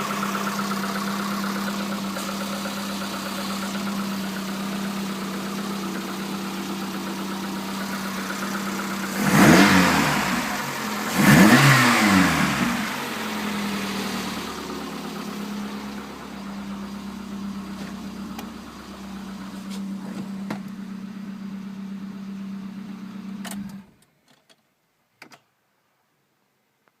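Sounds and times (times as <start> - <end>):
engine ticks: 0.0 - 19.8
car engine idling: 0.0 - 23.9.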